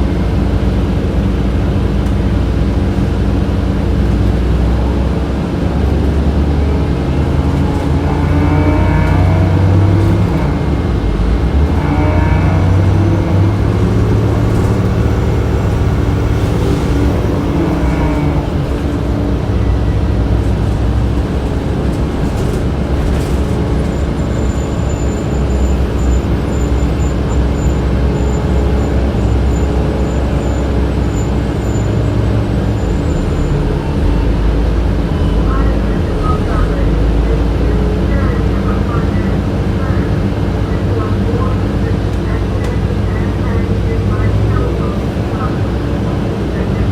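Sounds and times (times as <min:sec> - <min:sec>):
bus engine droning: 0:00.0 - 0:46.9
road noise: 0:00.0 - 0:46.9.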